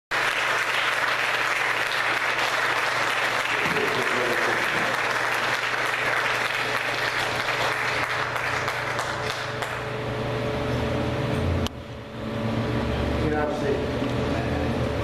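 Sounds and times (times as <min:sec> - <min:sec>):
congregation applauding: 0:00.1 - 0:10.0.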